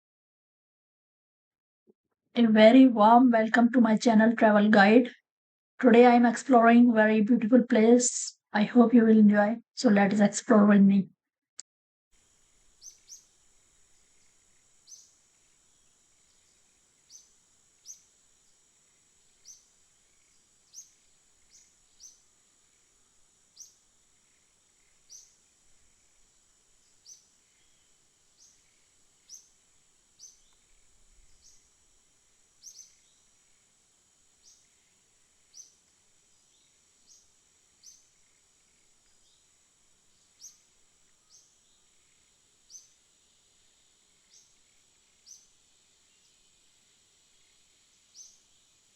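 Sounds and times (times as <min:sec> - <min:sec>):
steady high hiss: 0:12.2 - 0:48.9
birds chirping: 0:12.8 - 0:13.3, 0:13.9 - 0:18.6, 0:19.3 - 0:22.8.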